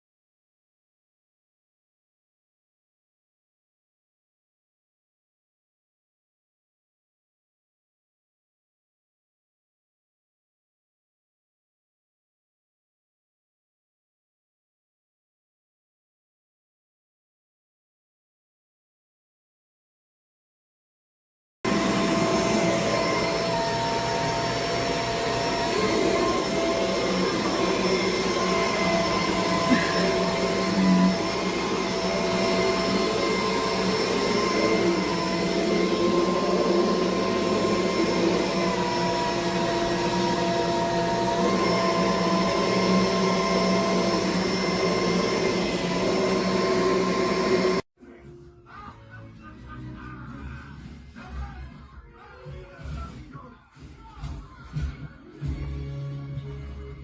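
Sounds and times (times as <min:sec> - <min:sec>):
upright vacuum running: 0:21.7 - 0:47.8.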